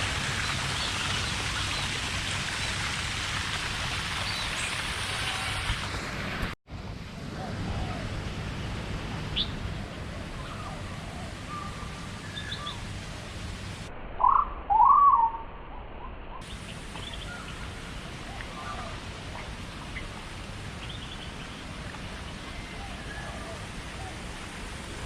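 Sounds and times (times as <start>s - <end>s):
steady hiss: 8.0s - 13.9s, 16.4s - 25.0s
birds chirping: 9.4s - 12.8s, 16.4s - 19.0s
loud swooping bird calls: 14.2s - 15.4s.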